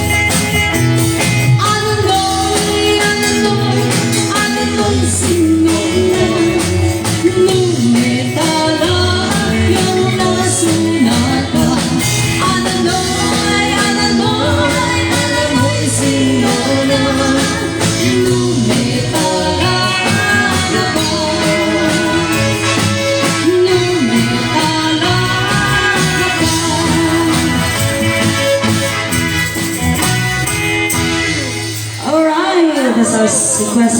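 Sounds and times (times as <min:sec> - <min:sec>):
live band playing a waltz: 0:00.0 - 0:33.9
person singing: 0:01.5 - 0:28.6.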